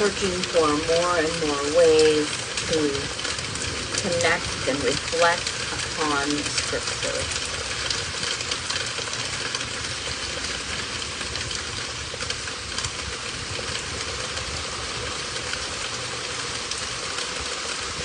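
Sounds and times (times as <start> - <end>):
steady rain: 0.0 - 18.0.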